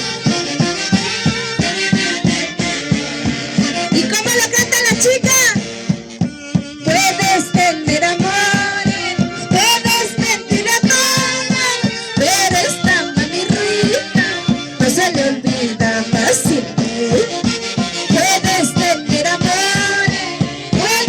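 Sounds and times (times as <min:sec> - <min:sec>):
folk orchestra playing: 0:00.0 - 0:21.0
steady beat: 0:13.7 - 0:15.2, 0:15.9 - 0:18.6
high wavering melody: 0:13.8 - 0:14.3.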